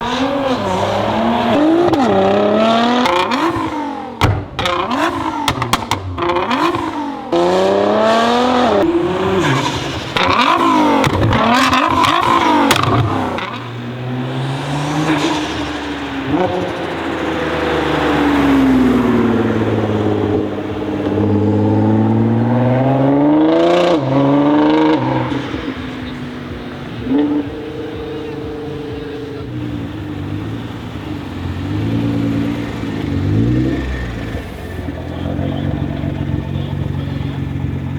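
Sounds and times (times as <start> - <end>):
exhaust pops and bangs: 0.0 - 7.4, 8.7 - 23.0
car engine revving: 0.0 - 37.9.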